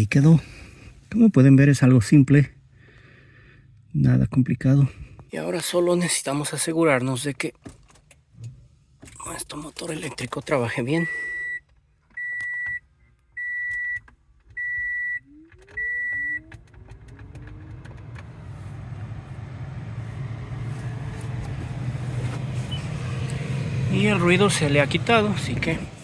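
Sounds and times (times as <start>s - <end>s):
vehicle warning chime beeping: 10.7s - 16.5s, 22.6s - 23.1s
blower motor whining: 15.5s - 26.0s.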